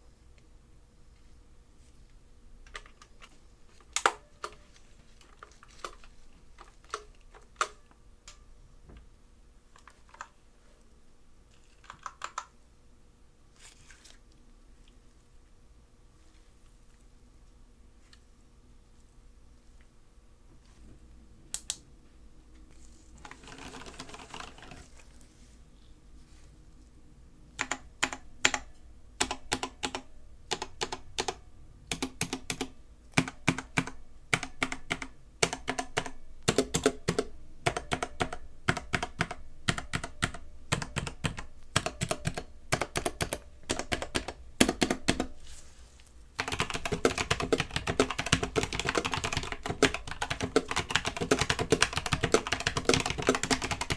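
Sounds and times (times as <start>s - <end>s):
mechanical keyboard typing: 5.3s - 7.9s, 11.6s - 12.5s, 23.2s - 24.9s, 27.6s - 45.4s, 46.4s - 53.9s.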